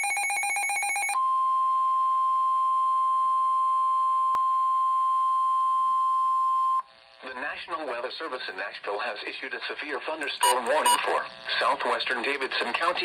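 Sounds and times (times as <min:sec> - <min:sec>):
steady alarm tone: 0:00.0 - 0:01.2, 0:10.3 - 0:11.1
rapidly pulsing beeps: 0:10.3 - 0:11.1.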